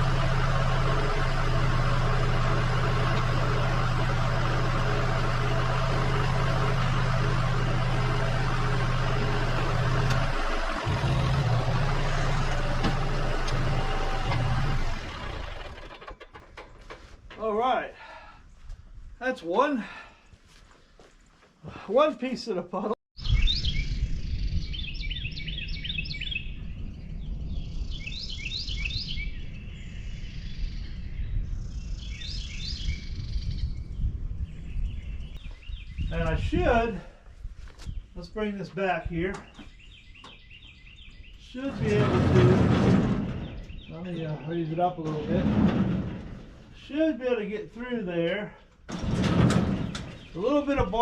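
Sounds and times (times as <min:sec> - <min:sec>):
engine running: 0:00.0 - 0:17.0, 0:41.4 - 0:43.9
bird chirping: 0:23.2 - 0:36.4, 0:39.3 - 0:41.7, 0:43.3 - 0:45.1, 0:49.8 - 0:51.0.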